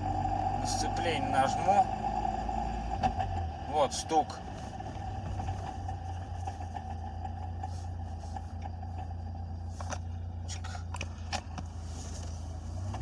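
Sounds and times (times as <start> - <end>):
car engine running: 0.0 - 13.0.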